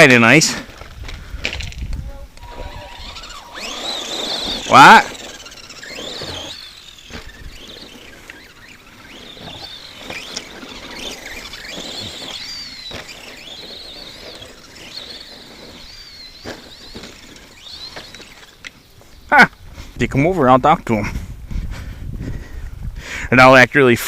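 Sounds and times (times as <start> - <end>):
toy truck electric motor whining: 0.7 - 19.1.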